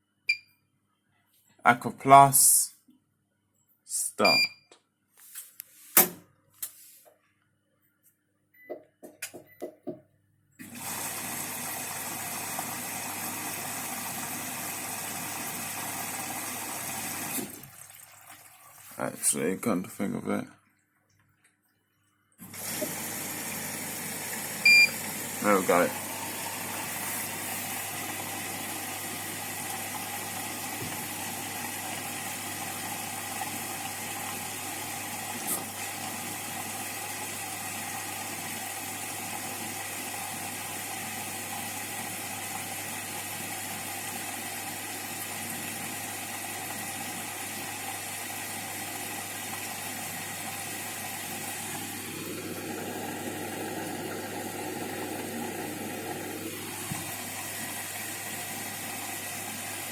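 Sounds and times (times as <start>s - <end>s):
water rushing into washing machine: 10.6s - 19.4s, 22.4s - 59.9s
washing machine drum motor whine: 22.4s - 59.9s.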